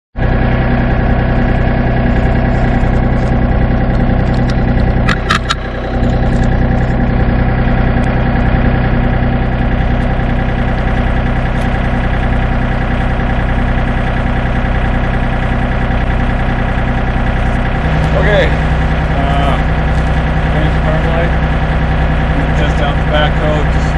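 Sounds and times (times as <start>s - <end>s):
diesel tractor engine running: 0.2s - 23.9s.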